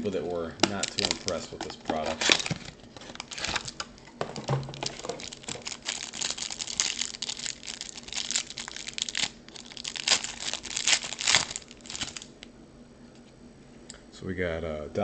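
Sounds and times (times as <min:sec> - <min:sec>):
plastic packaging crinkling: 0:00.6 - 0:12.5.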